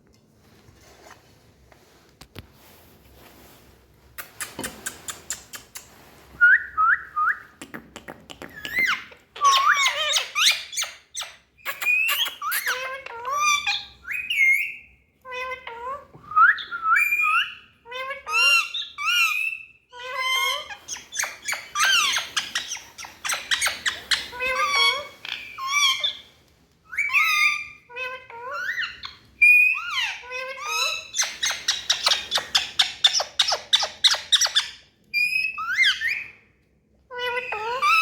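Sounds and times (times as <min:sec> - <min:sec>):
parakeets chirping and squawking: 0:08.5 - 0:14.7, 0:17.0 - 0:26.3, 0:26.9 - 0:36.3, 0:37.1 - 0:38.0.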